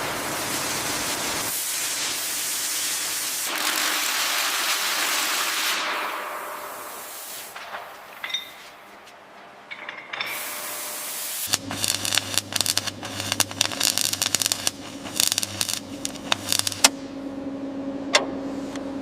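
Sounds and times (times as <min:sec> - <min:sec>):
hissing spray: 0:00.0 - 0:05.9, 0:06.5 - 0:07.6, 0:10.4 - 0:16.9
machine humming: 0:11.5 - 0:19.0.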